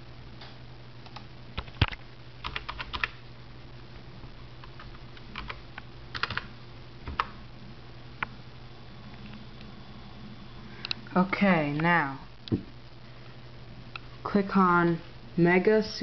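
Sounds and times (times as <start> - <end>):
low steady hum: 0.0 - 16.0
typing on computer keyboard: 1.8 - 3.2, 6.2 - 6.5.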